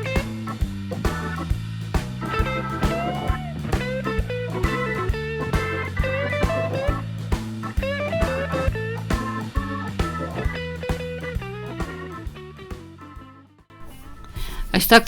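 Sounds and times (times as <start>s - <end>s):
steady drum beat: 0.0s - 13.3s
bluesy electric guitar: 0.0s - 14.3s
bass line: 0.0s - 15.0s.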